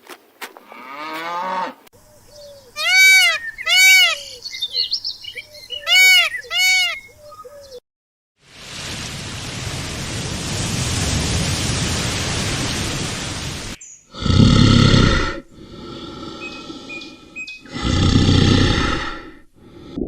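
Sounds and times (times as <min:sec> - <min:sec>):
large animal low calls: 0:14.1 - 0:20.0
large animal rough call: 0:14.1 - 0:20.0.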